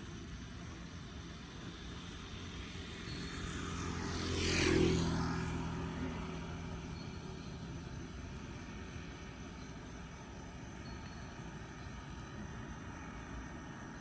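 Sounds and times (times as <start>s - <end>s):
vehicle passing by: 1.0s - 10.8s.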